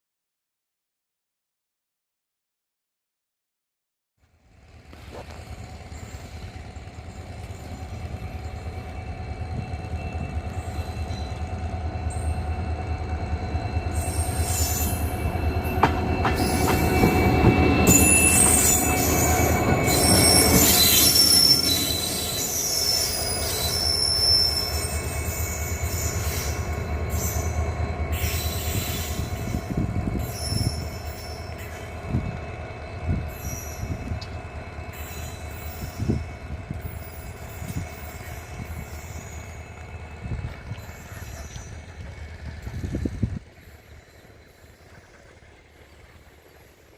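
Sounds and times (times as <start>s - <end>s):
diesel locomotive engine chugging: 4.2s - 46.9s
high thin squeals: 5.9s - 32.0s, 33.2s - 34.2s, 34.8s - 39.7s.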